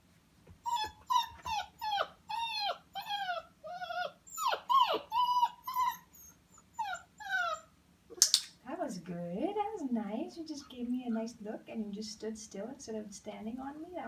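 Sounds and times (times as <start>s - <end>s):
puppy whining: 0.6s - 8.2s.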